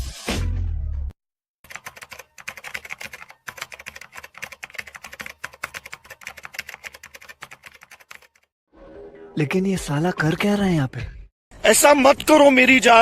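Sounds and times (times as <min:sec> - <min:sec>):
rapid typing on keyboard: 0:01.6 - 0:08.5.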